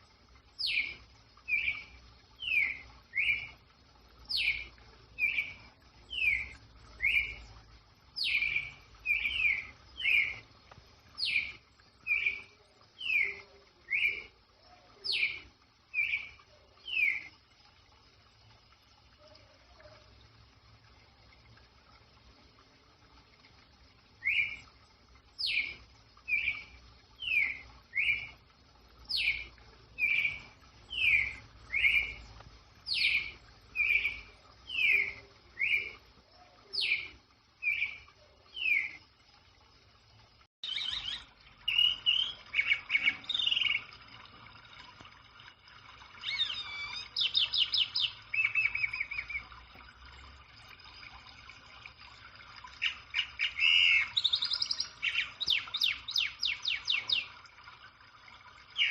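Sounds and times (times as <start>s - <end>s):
bird song with rolling trills: 0.6s - 7.6s, 8.2s - 10.5s, 11.1s - 17.4s, 24.2s - 24.7s, 25.4s - 28.4s, 29.0s - 39.0s, 40.6s - 44.3s, 46.0s - 50.3s, 52.6s - 57.9s, 58.6s - 58.9s.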